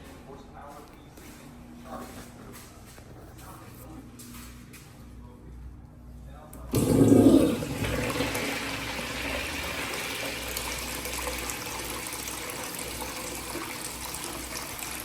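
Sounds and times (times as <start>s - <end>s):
toilet flushing: 6.7s - 15.0s.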